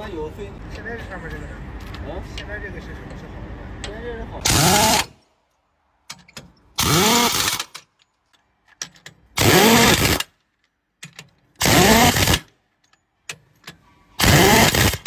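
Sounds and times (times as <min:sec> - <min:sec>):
power tool spinning up: 0:04.4 - 0:05.1, 0:06.8 - 0:07.7, 0:09.4 - 0:10.2, 0:11.6 - 0:12.4, 0:14.2 - 0:15.0.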